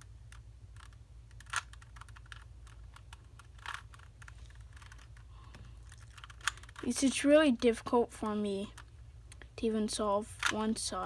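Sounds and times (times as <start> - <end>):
plastic puzzle cube clicking: 0.0 - 6.8, 10.3 - 10.6.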